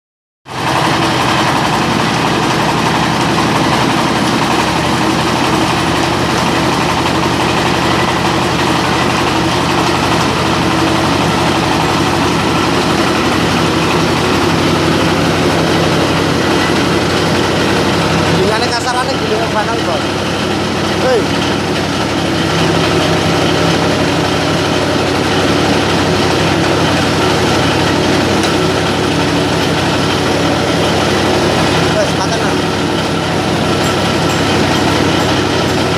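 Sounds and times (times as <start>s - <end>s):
dough mixer machine humming: 0.5s - 35.9s.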